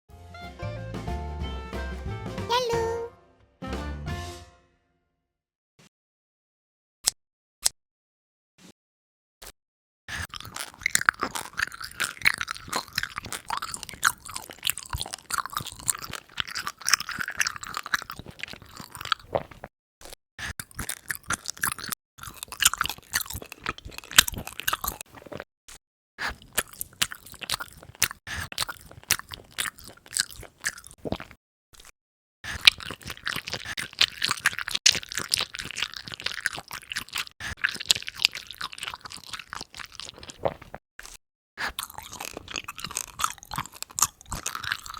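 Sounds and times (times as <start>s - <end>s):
crunchy wet chewing: 10.1s - 25.5s, 26.2s - 44.9s.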